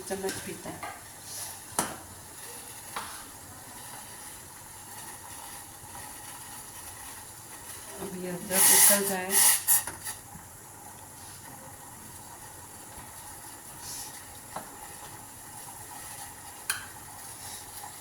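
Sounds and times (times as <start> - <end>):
water sizzling in a pan: 0.0 - 18.0.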